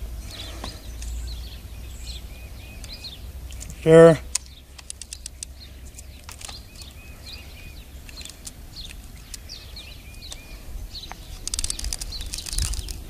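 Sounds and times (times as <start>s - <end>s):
low outdoor rumble: 0.0s - 13.0s
songbirds chirping: 0.0s - 13.0s
sharp clicks: 2.8s - 7.0s, 8.0s - 13.0s.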